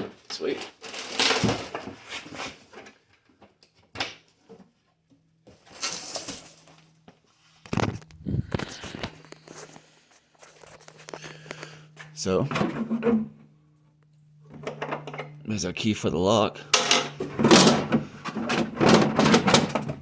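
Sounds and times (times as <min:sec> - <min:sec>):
steady low hum: 0:05.5 - 0:20.0
knocks of toolbox handling: 0:16.8 - 0:20.0.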